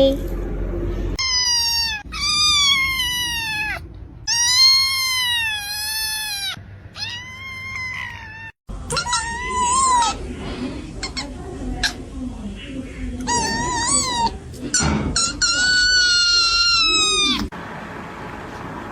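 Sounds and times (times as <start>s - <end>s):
kitten meowing: 1.2s - 10.2s, 15.4s - 17.5s.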